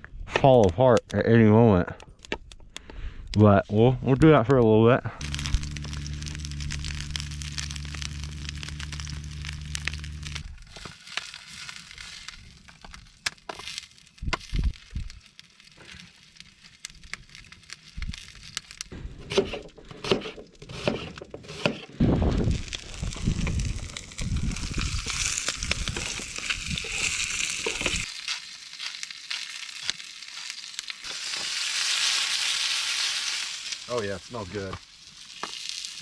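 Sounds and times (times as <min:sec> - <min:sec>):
wood fire crackling and popping: 0:00.3 - 0:21.0, 0:21.7 - 0:36.0
steady low hum: 0:05.2 - 0:10.5.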